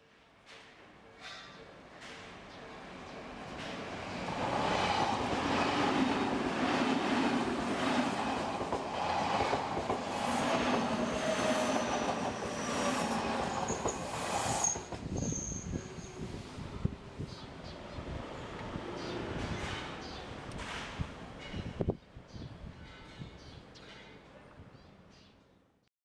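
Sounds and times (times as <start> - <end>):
train wheel and rail noise: 0.1 - 24.4
high wheel squeal: 10.2 - 16.4.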